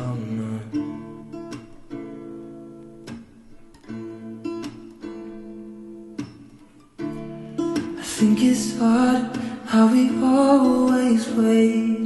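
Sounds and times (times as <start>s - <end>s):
person singing pop song: 0.0s - 1.6s, 7.6s - 12.0s
acoustic guitar strumming: 0.0s - 12.0s.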